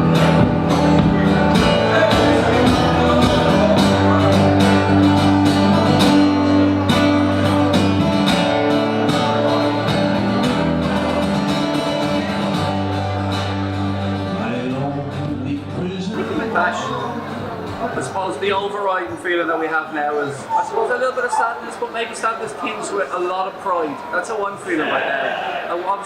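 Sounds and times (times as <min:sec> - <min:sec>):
guitar-led song with singing: 0:00.0 - 0:18.8.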